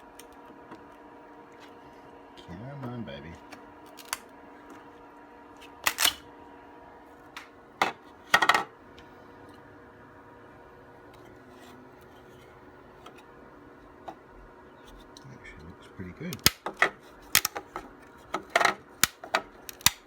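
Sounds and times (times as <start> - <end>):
steady machine hum: 0.0 - 20.0
plastic clicks and crackling snaps: 3.5 - 4.3, 16.3 - 17.8, 18.4 - 20.0.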